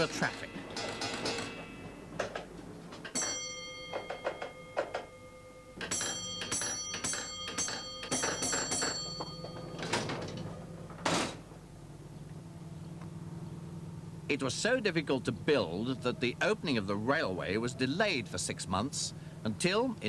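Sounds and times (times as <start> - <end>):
heavy clunks: 0.0 - 11.8
bell ringing: 3.0 - 10.6.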